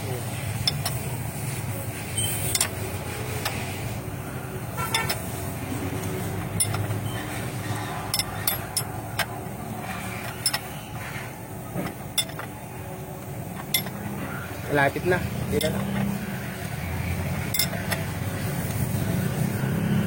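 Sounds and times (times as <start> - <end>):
hand tools clinking on metal: 0.6 - 1.1, 2.2 - 3.6, 6.4 - 11.1, 11.8 - 12.6, 13.6 - 14.1, 15.5 - 16.2, 17.4 - 18.1.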